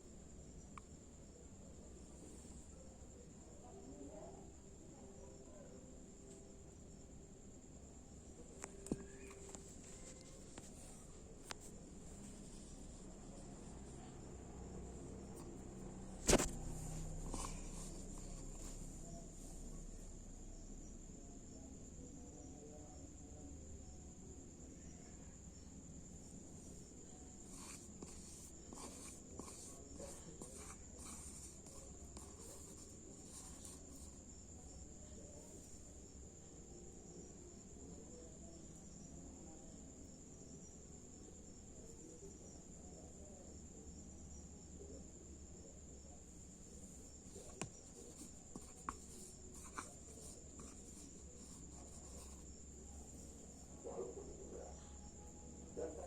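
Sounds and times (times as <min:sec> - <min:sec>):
rustling and scratching: 0:16.2 - 0:19.5, 0:27.4 - 0:34.2, 0:46.7 - 0:53.4
faint high-pitched tone: 0:54.6 - 0:56.0.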